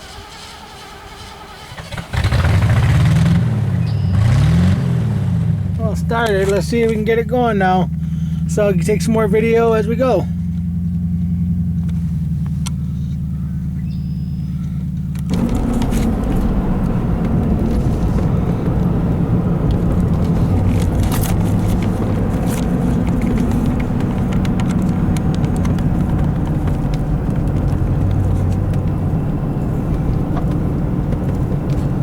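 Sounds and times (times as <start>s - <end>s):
vehicle engine and road noise: 0.0s - 32.0s
small clicks and rattles: 19.7s - 29.0s.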